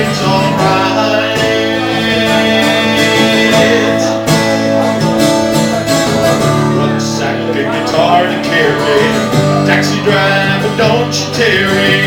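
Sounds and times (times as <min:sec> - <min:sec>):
acoustic guitar chords strummed: 0:00.0 - 0:12.0.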